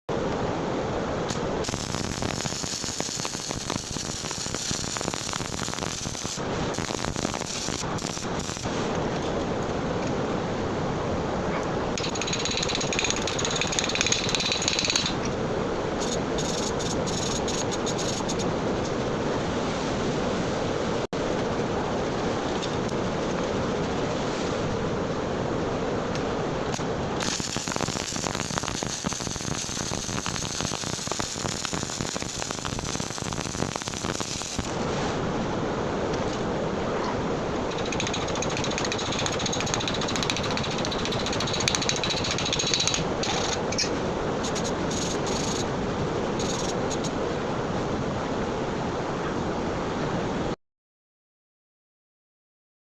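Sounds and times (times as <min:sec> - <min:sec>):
welding arc crackling: 0:01.3 - 0:08.9, 0:16.0 - 0:18.5, 0:26.7 - 0:34.8, 0:37.7 - 0:43.8, 0:44.4 - 0:45.6.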